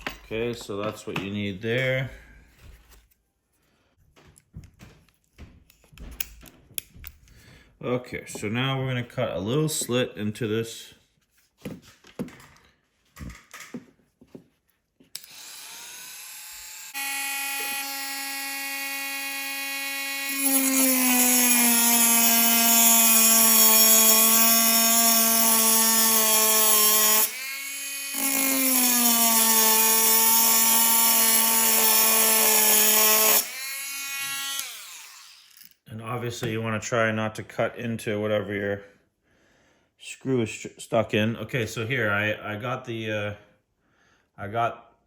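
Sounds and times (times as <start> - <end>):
rotary tool whining: 15.1 - 35.8
cutting disc grinding metal: 15.2 - 35.8.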